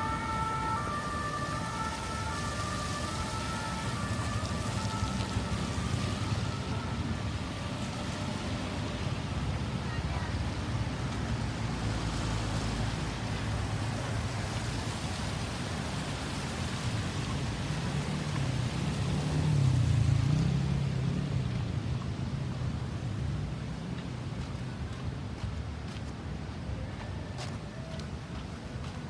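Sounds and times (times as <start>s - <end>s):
road traffic rumbling: 0.0s - 25.4s.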